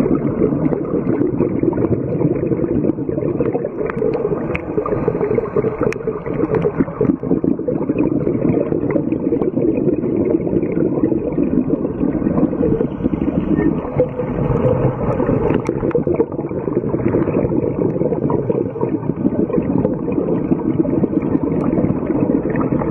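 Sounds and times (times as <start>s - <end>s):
underwater rushing gurgling wash: 0.0s - 22.9s
faint clicks: 3.4s - 4.8s.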